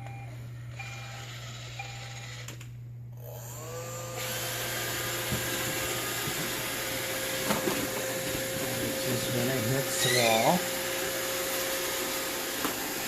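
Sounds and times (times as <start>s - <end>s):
robot vacuum motor whine: 0.0s - 2.6s, 3.2s - 13.0s
vacuum and brushes hissing: 4.2s - 13.0s.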